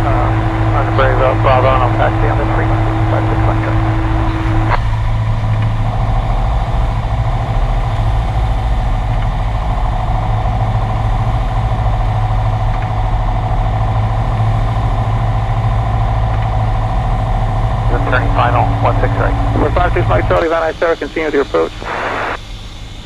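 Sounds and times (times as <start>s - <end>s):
radio transmission: 0.0s - 5.0s, 17.6s - 22.4s
propeller engine droning: 0.0s - 23.0s
radio click: 17.9s - 22.4s.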